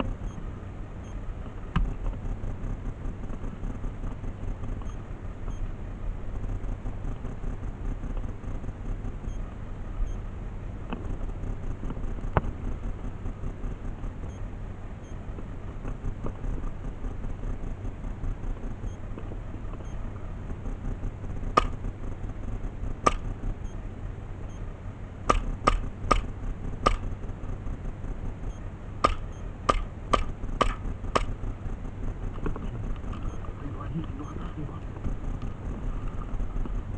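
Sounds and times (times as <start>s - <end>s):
low background noise: 0.0s - 36.9s
airsoft gun shots: 21.6s - 21.8s, 23.0s - 23.3s, 25.3s - 27.1s, 29.0s - 31.4s.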